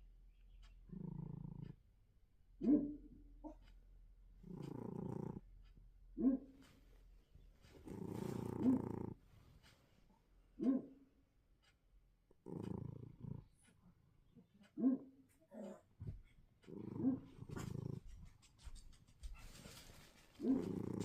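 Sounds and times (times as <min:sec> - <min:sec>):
cat snoring: 0:00.9 - 0:01.8, 0:04.4 - 0:05.5, 0:07.7 - 0:09.5, 0:12.4 - 0:13.7, 0:16.7 - 0:18.5, 0:20.4 - 0:21.0
high-pitched snorts: 0:07.9 - 0:09.2.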